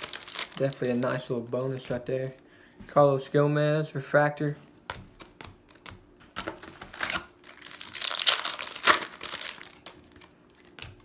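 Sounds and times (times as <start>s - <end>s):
foil wrapper crinkling: 0.0s - 2.4s, 6.4s - 11.0s.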